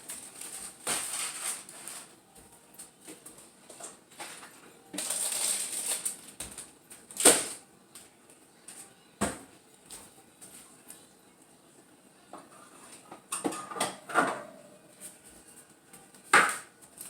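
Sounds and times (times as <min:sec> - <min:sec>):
packages rustling: 0:00.0 - 0:07.6.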